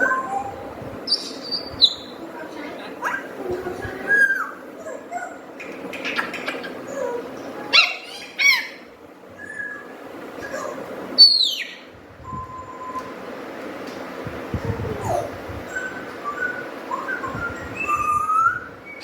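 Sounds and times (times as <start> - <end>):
parrot whistling and chirping: 1.1 - 2.1, 4.1 - 4.6, 9.4 - 13.1, 15.7 - 19.0.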